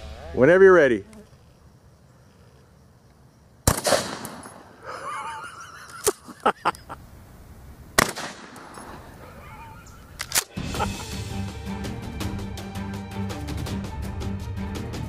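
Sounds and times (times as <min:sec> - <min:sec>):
shotgun blasts with echo: 0:03.6 - 0:04.7, 0:08.0 - 0:08.8.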